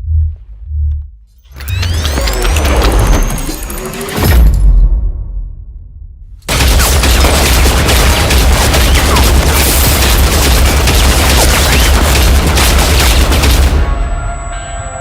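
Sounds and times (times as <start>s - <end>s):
heavy automatic gunfire: 6.5s - 14.0s.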